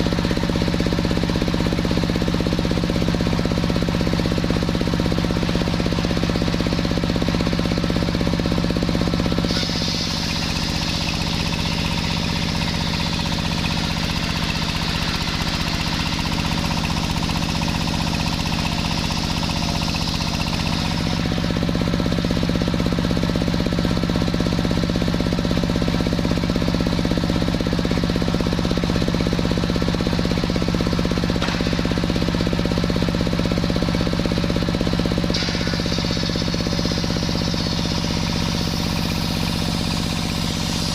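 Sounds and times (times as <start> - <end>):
engine-driven machine hum: 0.0 - 40.9
saw cutting wood: 9.4 - 21.6.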